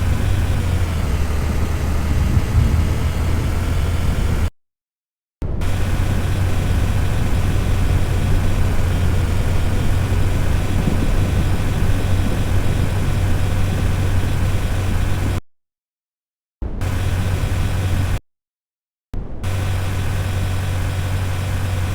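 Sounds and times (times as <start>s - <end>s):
car interior road noise: 0.0s - 4.5s, 5.6s - 15.4s.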